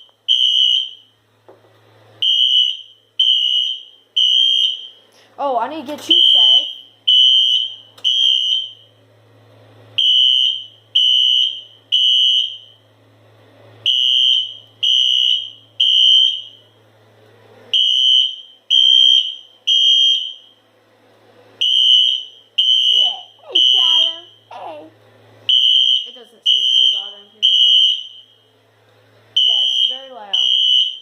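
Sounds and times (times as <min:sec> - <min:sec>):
fire alarm horn beeps: 0:00.0 - 0:01.2, 0:02.2 - 0:05.0, 0:06.0 - 0:09.0, 0:10.0 - 0:12.8, 0:13.8 - 0:16.7, 0:17.7 - 0:20.6, 0:21.6 - 0:24.5, 0:25.5 - 0:28.5, 0:29.4 - 0:31.0.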